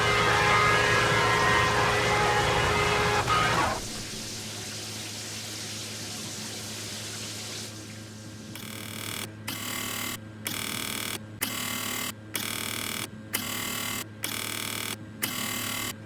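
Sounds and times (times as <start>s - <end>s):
washing machine motor whine: 0.0s - 6.9s
water running into machine: 0.0s - 8.2s.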